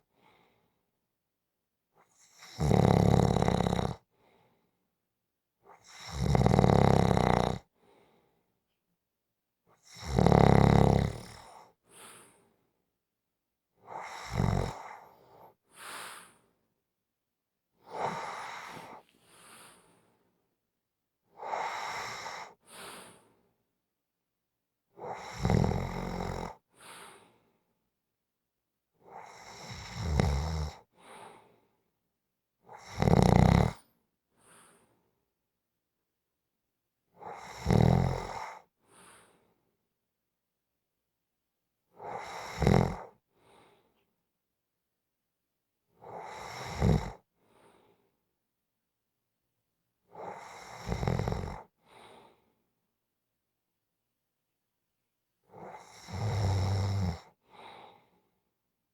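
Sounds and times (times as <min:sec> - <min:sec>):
person snoring: 0:02.5 - 0:04.0, 0:06.0 - 0:07.6, 0:10.0 - 0:11.4, 0:14.0 - 0:14.9, 0:32.8 - 0:33.8, 0:42.0 - 0:43.0, 0:46.1 - 0:47.2, 0:50.2 - 0:51.7
soft breath out: 0:15.0 - 0:16.6, 0:18.2 - 0:20.3, 0:47.4 - 0:48.2, 0:51.8 - 0:52.6, 0:57.5 - 0:58.3.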